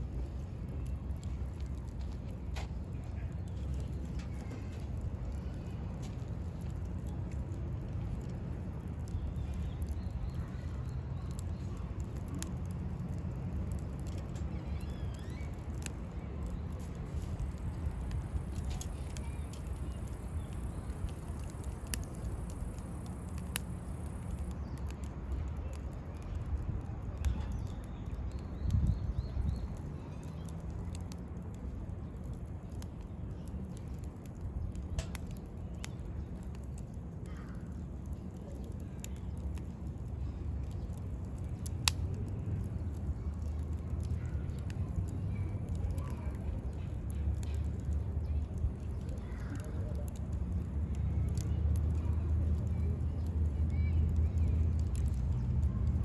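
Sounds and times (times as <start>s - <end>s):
campfire crackling and popping: 0.0s - 56.0s
low steady rumble: 0.0s - 56.0s
faint bird chirps: 14.1s - 15.9s.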